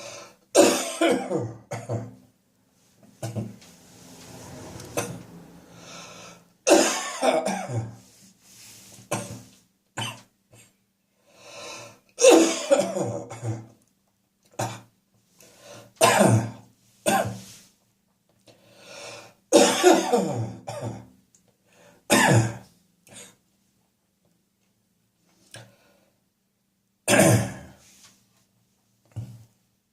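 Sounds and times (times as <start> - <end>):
harsh chesty coughing: 0.5 - 2.2, 6.6 - 8.0, 9.1 - 9.4, 12.2 - 13.7, 14.6 - 14.9, 16.0 - 17.4, 19.5 - 21.1, 22.1 - 23.4, 27.1 - 27.8.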